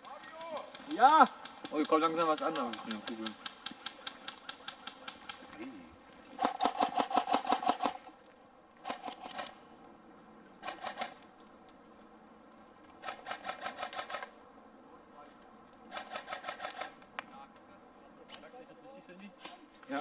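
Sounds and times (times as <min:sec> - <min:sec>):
airsoft gun automatic fire: 0:06.4 - 0:08.0, 0:08.8 - 0:09.6, 0:10.6 - 0:11.2, 0:13.0 - 0:14.4, 0:15.9 - 0:17.0.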